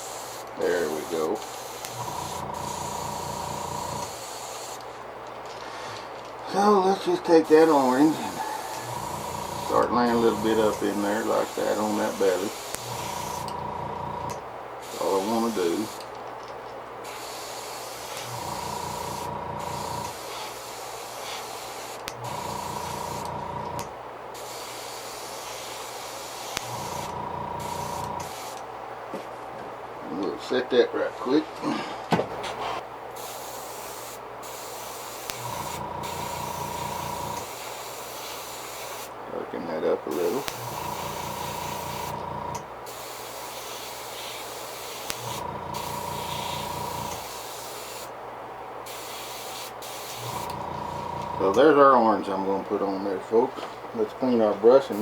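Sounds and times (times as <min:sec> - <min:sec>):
airbrush spraying hiss: 0:00.0 - 0:04.9, 0:07.5 - 0:13.6, 0:14.3 - 0:16.1, 0:17.0 - 0:28.6, 0:33.1 - 0:39.2, 0:40.1 - 0:48.2, 0:48.8 - 0:51.6, 0:54.6 - 0:55.0.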